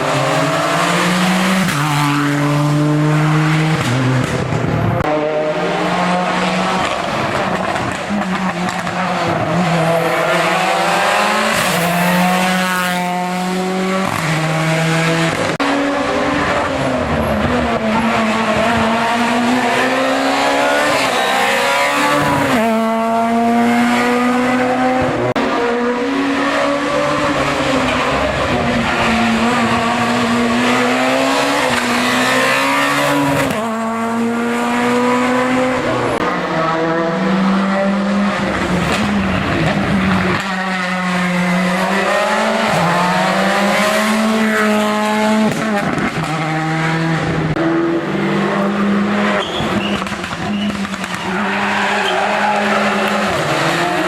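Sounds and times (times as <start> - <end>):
race car engine accelerating: 0.0 - 54.0.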